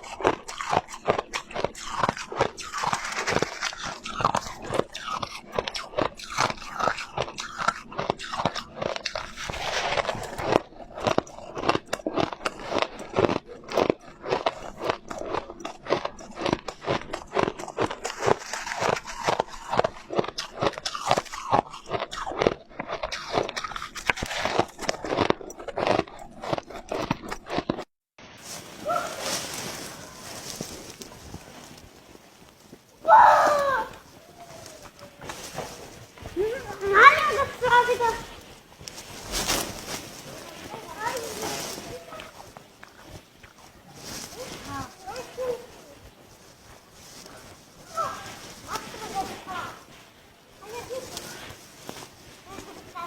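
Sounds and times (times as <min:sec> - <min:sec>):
crunching and chewing ice: 0:00.0 - 0:53.0
quiet hiss: 0:28.2 - 0:53.0.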